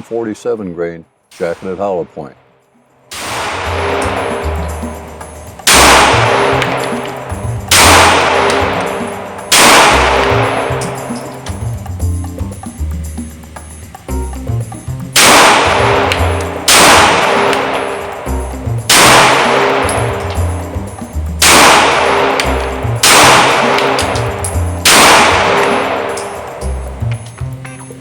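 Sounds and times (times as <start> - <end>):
pistol shots with ringing echo: 1.3 - 2.1, 3.1 - 11.6, 15.2 - 18.3, 18.9 - 20.4, 21.4 - 26.6.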